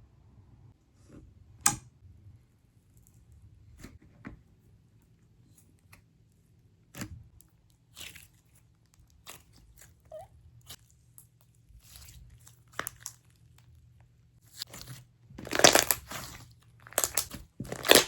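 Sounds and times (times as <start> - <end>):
slime clicking and popping: 15.5 - 16.2, 16.9 - 18.0.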